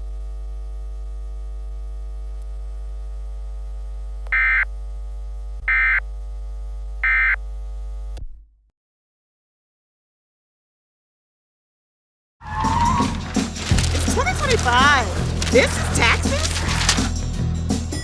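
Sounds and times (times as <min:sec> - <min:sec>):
steady electrical hum: 0:00.0 - 0:08.2.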